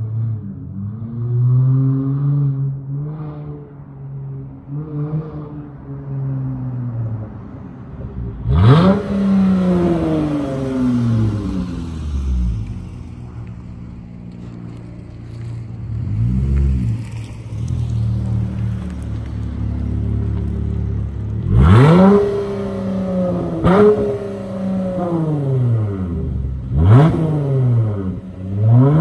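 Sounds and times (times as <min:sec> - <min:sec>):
car exhaust rumbling: 0:08.0 - 0:29.0
car exhaust revving: 0:08.4 - 0:29.0.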